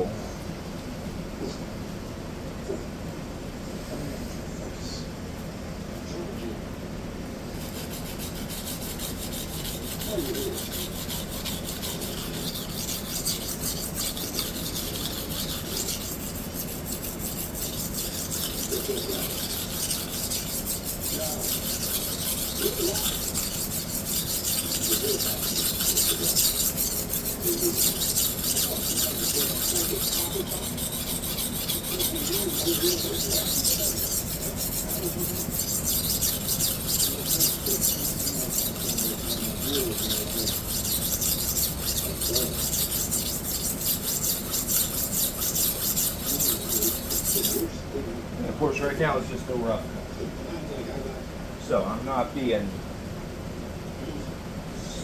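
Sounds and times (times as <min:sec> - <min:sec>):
knife scraping on sharpening stone: 0:07.6 - 0:47.7.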